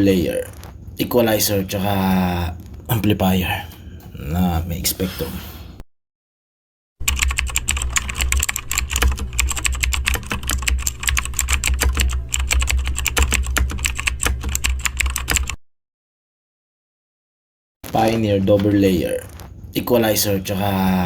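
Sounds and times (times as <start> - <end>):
rapid irregular clicking: 0.0 - 4.2, 7.0 - 15.6, 17.8 - 21.0
steady low hum: 0.0 - 5.8, 7.0 - 15.5, 17.8 - 21.0.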